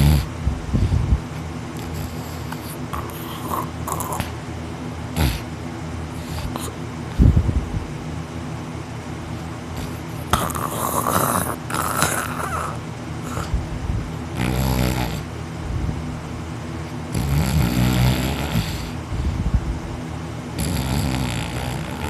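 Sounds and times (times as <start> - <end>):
man snoring heavily: 0.0 - 0.4, 1.8 - 4.3, 5.2 - 5.5, 9.7 - 13.6, 14.3 - 15.3, 17.1 - 19.5, 20.5 - 22.0.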